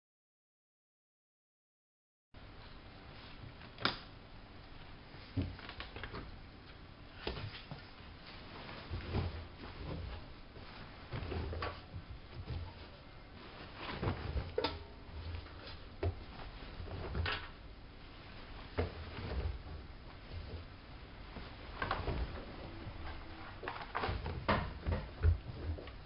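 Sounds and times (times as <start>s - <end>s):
washing machine knocking and thudding: 23.9s - 26.0s.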